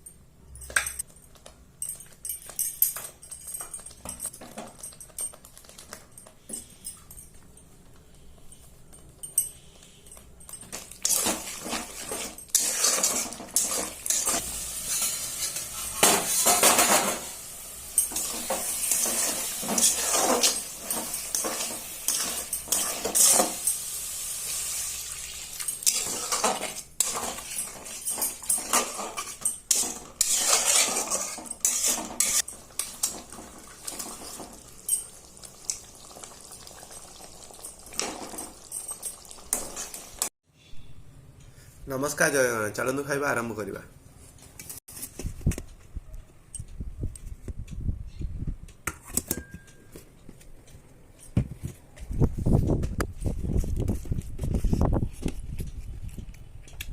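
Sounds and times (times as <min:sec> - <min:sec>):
spoon clinking against pots: 0:09.0 - 0:24.0, 0:25.4 - 0:40.3.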